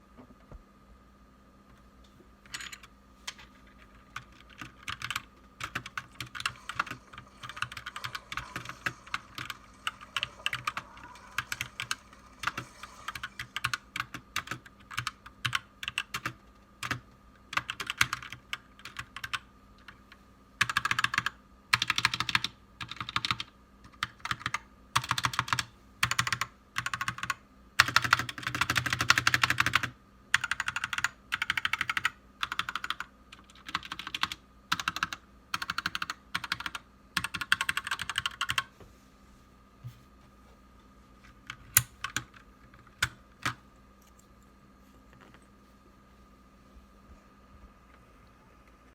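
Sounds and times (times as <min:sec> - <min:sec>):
mechanical keyboard typing: 0:02.5 - 0:38.7, 0:41.4 - 0:43.6.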